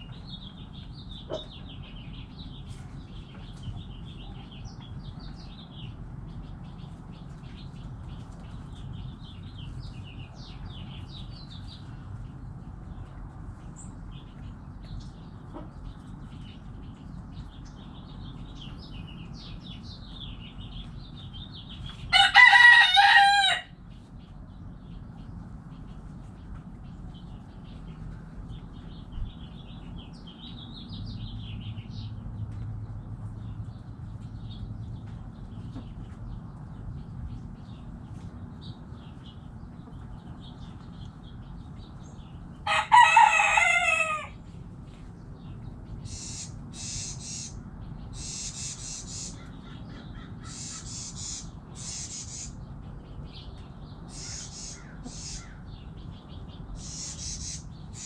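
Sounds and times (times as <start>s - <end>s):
low background hum: 0.0s - 58.0s
small birds chirping: 0.0s - 58.0s
rooster crowing: 22.1s - 23.8s, 42.6s - 44.5s
short high-pitched bird calls: 46.0s - 47.6s, 48.2s - 49.5s, 50.4s - 52.6s, 54.1s - 55.6s, 56.8s - 58.0s.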